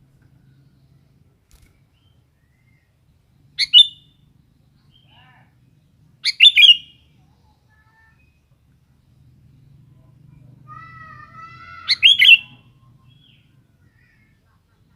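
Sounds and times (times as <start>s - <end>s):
bulbul calling: 3.6s - 4.2s, 6.2s - 7.0s, 11.8s - 14.2s.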